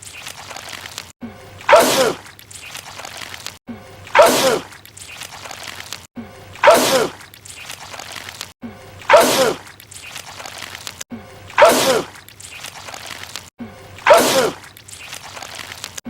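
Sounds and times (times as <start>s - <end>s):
man sneezing loudly: 4.2s - 4.7s, 6.6s - 7.2s, 9.1s - 9.6s, 11.6s - 12.1s, 14.1s - 14.6s.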